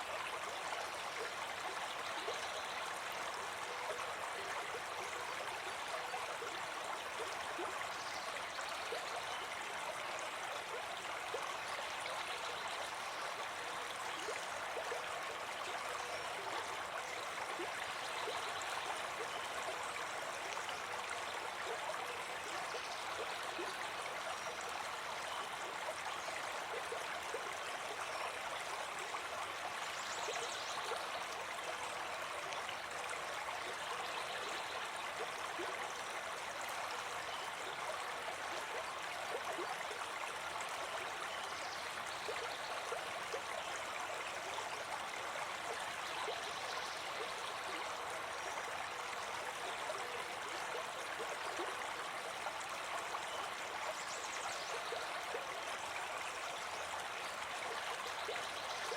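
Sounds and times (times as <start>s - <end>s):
brook babbling over stones: 0.0s - 58.9s.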